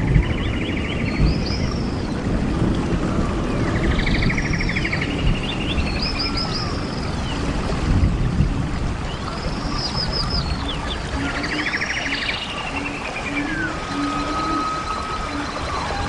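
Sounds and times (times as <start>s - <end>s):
birds calling: 0.0s - 7.6s, 9.0s - 16.0s.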